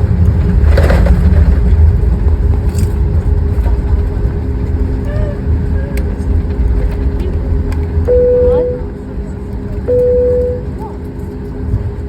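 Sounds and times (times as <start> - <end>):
airplane engines taxiing: 0.0 - 12.0.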